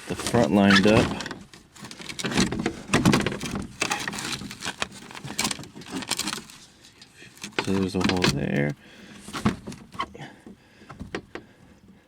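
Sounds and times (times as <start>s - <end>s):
plastic shield scraping and knocking: 0.0s - 6.6s, 7.4s - 10.3s.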